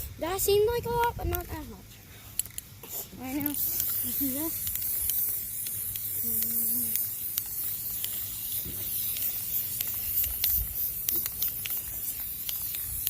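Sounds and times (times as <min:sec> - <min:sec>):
aerosol spray can hissing: 0:02.8 - 0:13.0
small clicks: 0:03.4 - 0:13.0.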